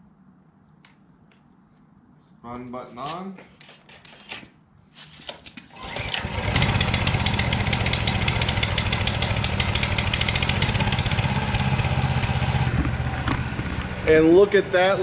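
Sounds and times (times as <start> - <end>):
small engine running at fast idle: 5.8 - 14.7.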